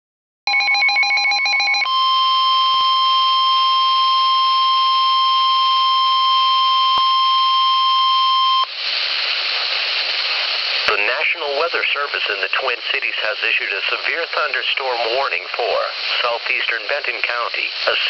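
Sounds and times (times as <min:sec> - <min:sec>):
steady high alarm tone: 0:00.5 - 0:08.7.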